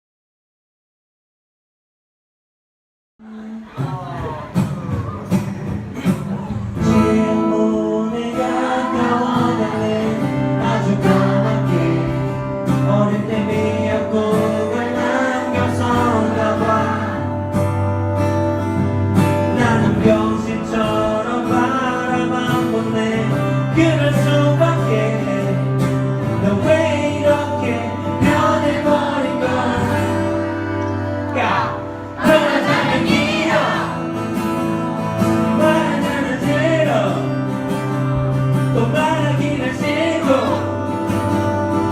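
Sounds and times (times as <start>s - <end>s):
backing track with bass notes: 3.8s - 41.9s
male singer vocals: 6.1s - 17.4s, 19.4s - 34.0s, 35.4s - 37.5s, 38.6s - 41.0s.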